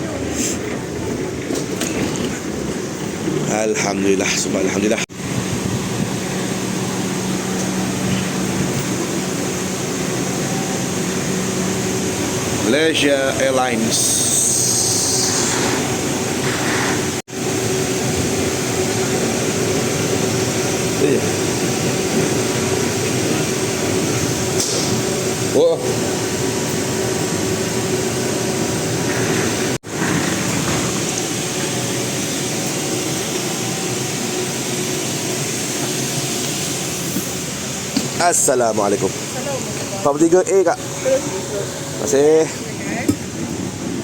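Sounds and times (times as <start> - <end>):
airliner cabin roar: 0.0 - 44.0
jet airliner rushing noise: 5.1 - 25.4.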